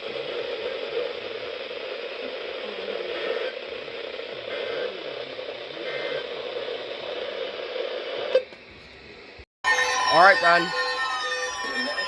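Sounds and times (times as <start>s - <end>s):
radio static hiss: 0.0s - 8.5s.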